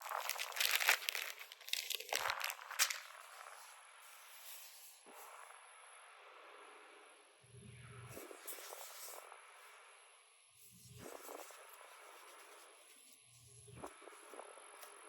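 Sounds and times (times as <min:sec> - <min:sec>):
crinkling and crackling: 0:00.0 - 0:03.7.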